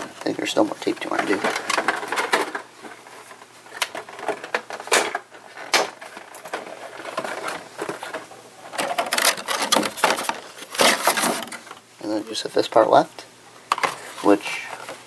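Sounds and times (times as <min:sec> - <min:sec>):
packaging rustling and clicking: 0:00.8 - 0:11.8.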